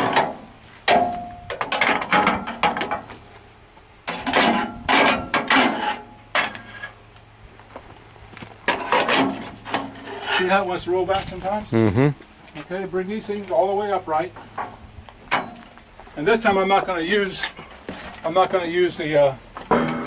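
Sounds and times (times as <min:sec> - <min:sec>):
metal clanks: 0:00.0 - 0:03.1, 0:19.6 - 0:20.0.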